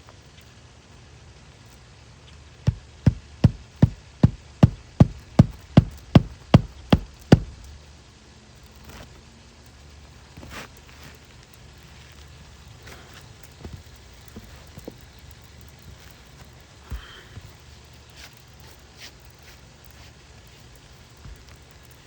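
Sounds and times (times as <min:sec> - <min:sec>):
hammer strikes: 0:02.7 - 0:07.7.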